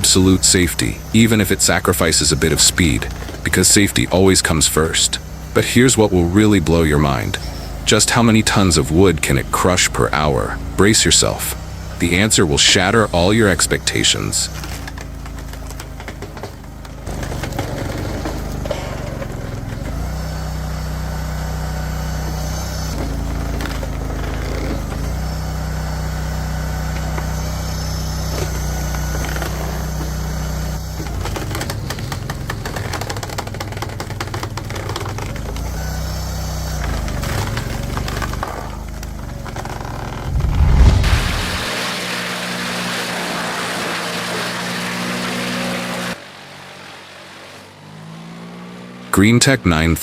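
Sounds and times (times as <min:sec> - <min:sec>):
wood-processing machine running: 0:00.0 - 0:39.4.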